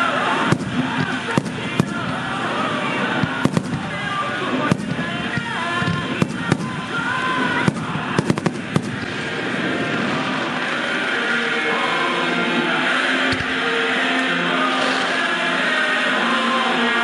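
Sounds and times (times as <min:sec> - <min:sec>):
fireworks bangs: 0:00.0 - 0:11.7.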